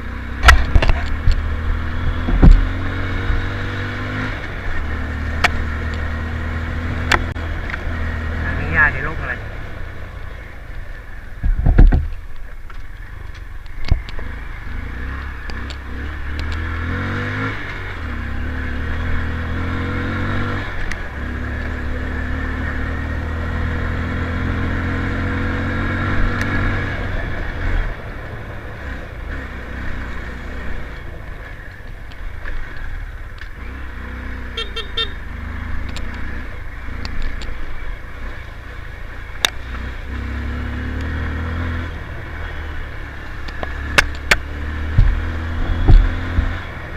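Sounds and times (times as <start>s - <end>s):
motorcycle engine running: 0.0s - 46.9s
loud thumps: 2.2s - 2.8s, 11.4s - 12.2s.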